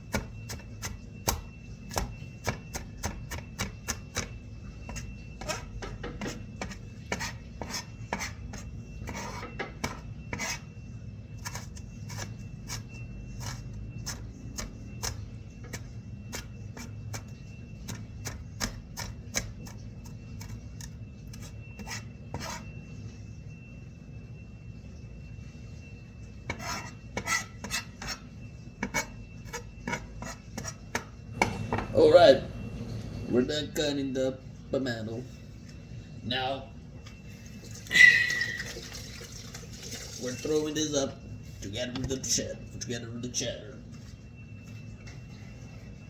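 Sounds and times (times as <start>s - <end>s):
knife chopping on cutting board: 30.6s - 32.0s.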